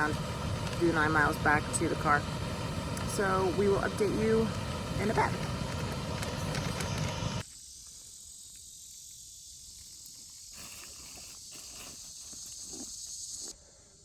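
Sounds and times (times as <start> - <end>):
insects chirping shrilly: 0.0 - 14.0.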